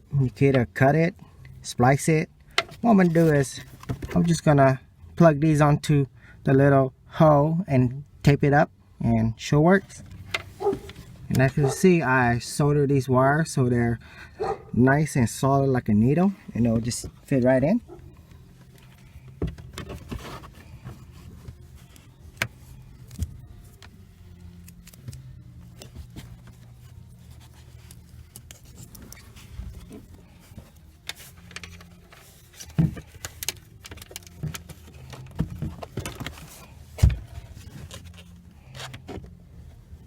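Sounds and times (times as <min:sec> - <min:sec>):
screws and parts being handled: 0:16.5 - 0:39.2.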